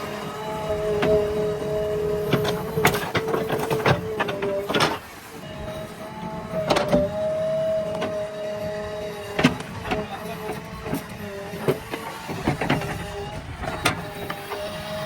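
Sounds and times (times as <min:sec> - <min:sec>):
hydraulic whine: 0:00.0 - 0:15.0
backhoe engine running: 0:08.6 - 0:15.0.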